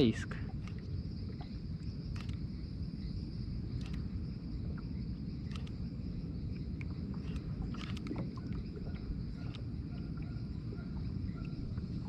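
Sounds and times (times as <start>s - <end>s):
insects buzzing: 0.0s - 12.0s
faint clicks: 2.1s - 2.4s, 3.8s - 4.1s, 5.4s - 5.8s, 6.8s - 8.6s.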